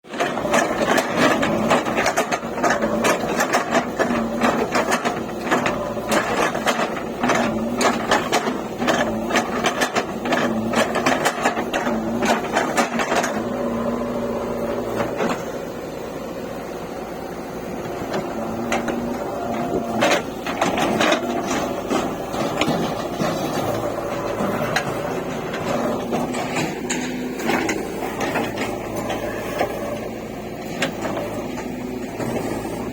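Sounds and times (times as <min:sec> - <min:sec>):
diesel engine running: 0:00.0 - 0:32.9
metallic clanks and rattles: 0:18.0 - 0:32.5.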